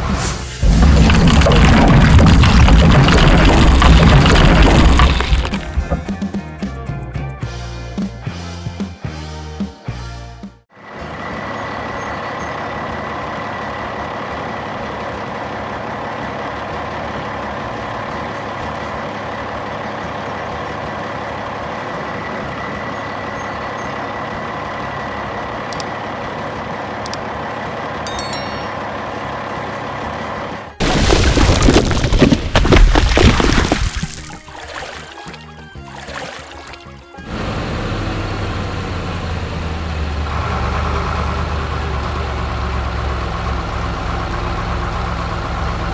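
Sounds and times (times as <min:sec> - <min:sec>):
loud rough rumbling noise: 0:00.0 - 0:06.3, 0:28.9 - 0:34.5
heavy truck engine droning: 0:10.7 - 0:31.5, 0:37.1 - 0:45.9.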